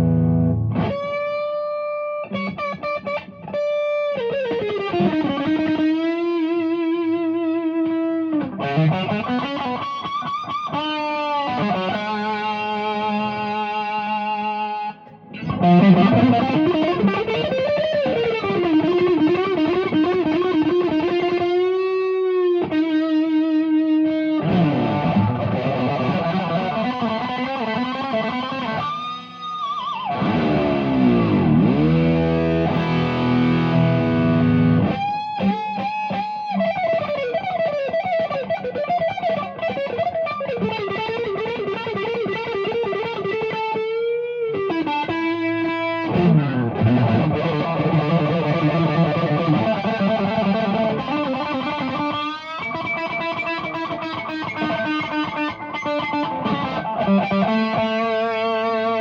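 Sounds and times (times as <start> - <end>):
distorted electric guitar lead: 0.0 - 59.0.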